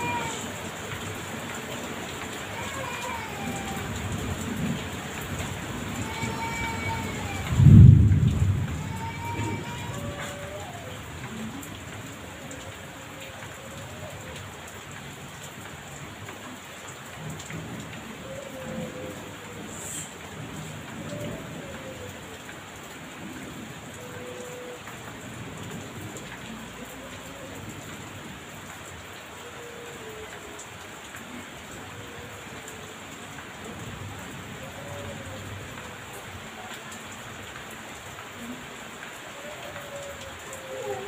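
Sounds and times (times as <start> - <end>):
heavy rain pouring: 0.0 - 41.0
thunder rumbling: 2.5 - 11.6.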